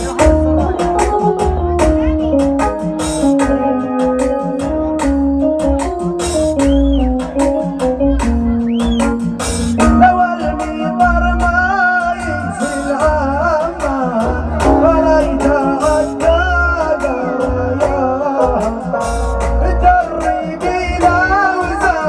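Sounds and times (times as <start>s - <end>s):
steady low beat: 0.0s - 22.0s
man singing: 9.7s - 22.0s.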